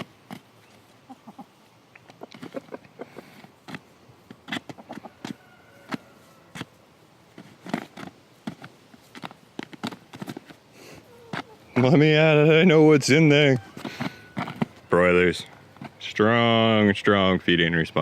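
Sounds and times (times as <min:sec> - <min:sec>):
chickens pecking at feed bag: 0:00.0 - 0:16.4.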